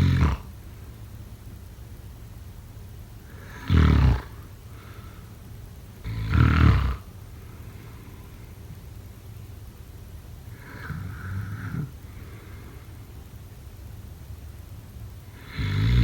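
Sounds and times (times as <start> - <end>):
person snoring: 0.0 - 0.5, 3.3 - 4.4, 6.1 - 7.0, 10.6 - 12.0, 15.4 - 16.0.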